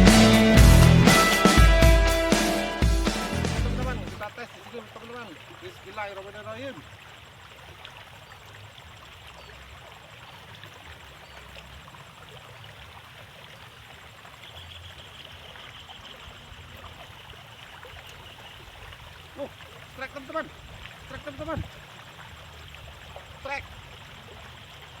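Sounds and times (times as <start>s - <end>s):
water trickling along a ditch: 3.4s - 25.0s.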